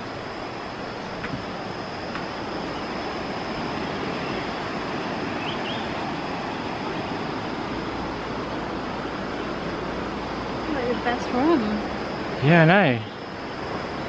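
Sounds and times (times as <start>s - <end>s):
river rushing: 0.0s - 14.0s
faint chirps: 5.3s - 6.0s, 11.8s - 14.0s.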